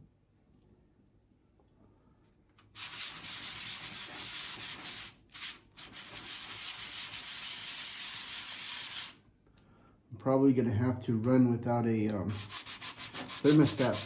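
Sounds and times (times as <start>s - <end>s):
sandpaper rubbing: 2.8s - 9.2s, 12.4s - 14.0s.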